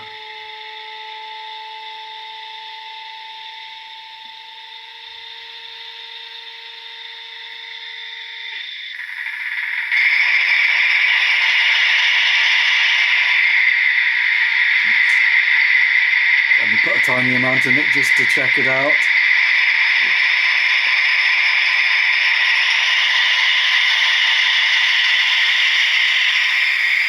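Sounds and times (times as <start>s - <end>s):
faint steady whine: 0.0s - 27.0s
diesel engine sound through small speaker: 16.6s - 19.1s.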